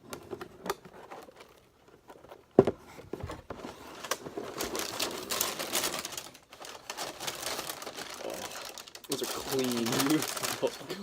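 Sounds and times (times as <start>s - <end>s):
paper crinkling and rustling: 3.2s - 11.0s.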